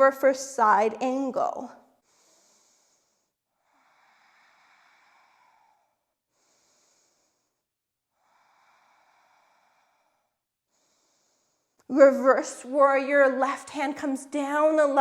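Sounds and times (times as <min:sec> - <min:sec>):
faint slow breathing: 0:01.8 - 0:11.9.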